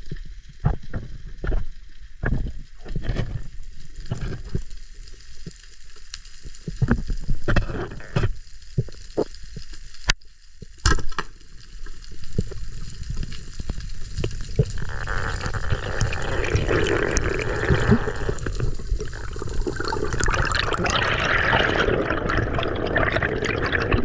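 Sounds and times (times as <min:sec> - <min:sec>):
underwater crackling clicks: 0:00.0 - 0:24.0.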